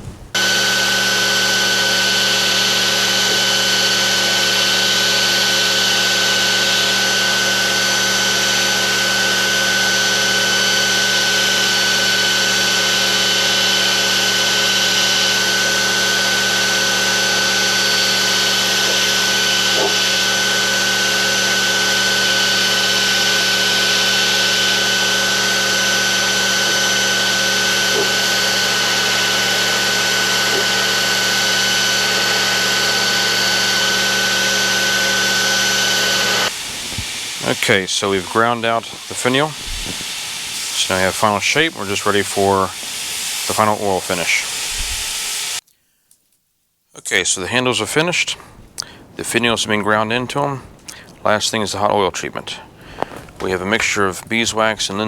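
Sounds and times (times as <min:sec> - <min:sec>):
electric grinder whining: 0:00.0 - 0:45.6.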